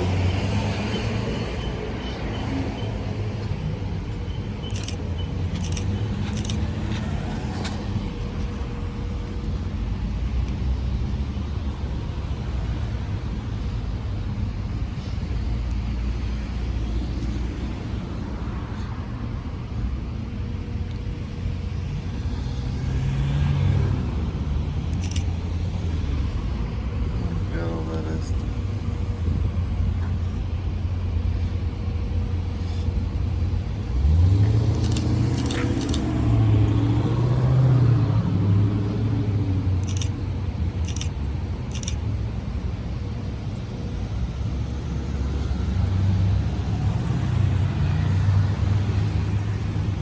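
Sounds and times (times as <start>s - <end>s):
car road and engine rumble: 0.0s - 50.0s
sharp clicks: 4.7s - 6.7s, 24.9s - 25.3s, 34.7s - 36.4s, 39.8s - 40.2s, 40.8s - 42.0s.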